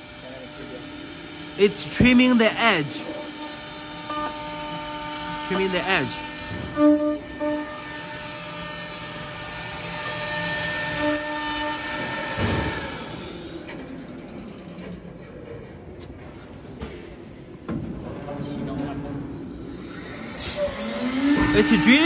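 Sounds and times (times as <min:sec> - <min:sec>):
drilling machine spindle whine: 0:00.0 - 0:13.7, 0:19.6 - 0:22.0
machine mechanical hum: 0:00.0 - 0:22.0.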